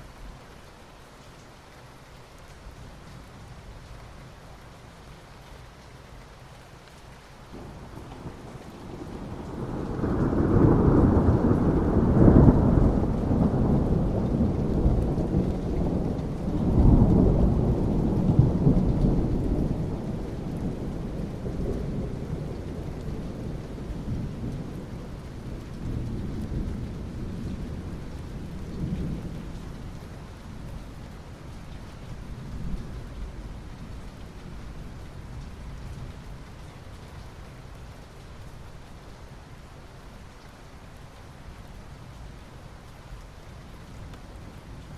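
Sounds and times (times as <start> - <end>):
rain falling on asphalt: 0.0 - 44.9
rolling thunder: 7.5 - 29.8.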